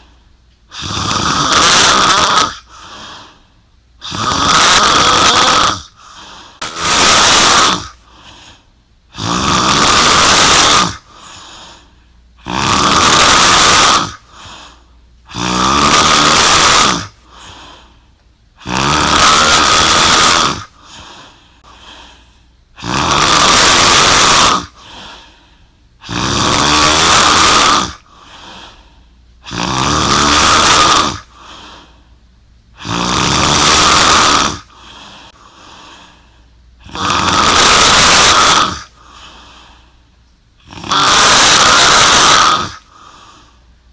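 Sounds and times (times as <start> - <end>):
woman snoring: 0.7 - 3.4, 4.0 - 17.9, 18.6 - 22.2, 22.8 - 25.3, 26.0 - 28.8, 29.4 - 32.0, 32.8 - 36.2, 36.8 - 39.7, 40.6 - 43.5
soft breaths: 2.6 - 3.8, 7.9 - 8.9, 11.0 - 12.4, 14.2 - 15.3, 17.2 - 18.3, 20.7 - 22.7, 24.7 - 26.0, 28.0 - 29.4, 31.2 - 32.3, 34.6 - 36.9, 38.9 - 40.4, 42.8 - 43.9.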